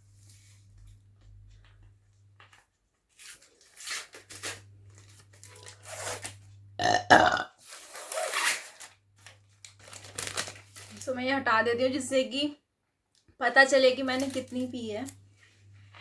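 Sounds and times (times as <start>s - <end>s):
woman burping: 6.8s - 7.5s.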